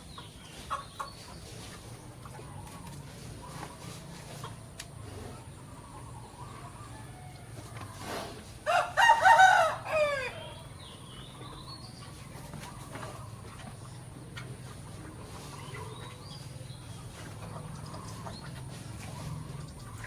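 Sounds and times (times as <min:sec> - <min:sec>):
rooster crowing: 0:08.6 - 0:10.6.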